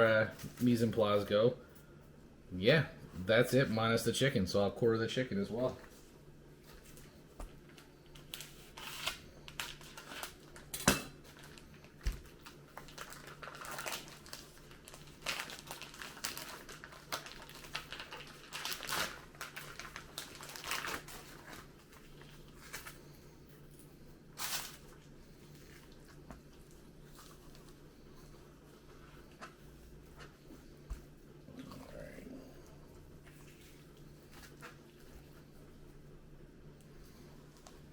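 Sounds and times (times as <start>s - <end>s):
plastic packaging crinkling: 8.1s - 23.1s.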